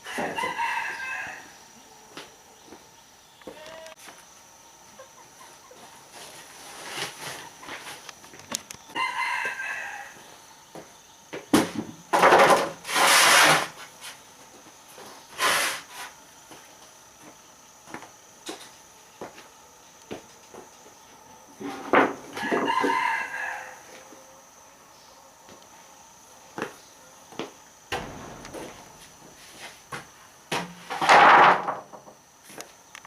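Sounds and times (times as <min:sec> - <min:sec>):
rooster crowing: 0:00.0 - 0:01.8, 0:08.9 - 0:10.3, 0:22.3 - 0:24.6
hens clucking: 0:04.8 - 0:06.5.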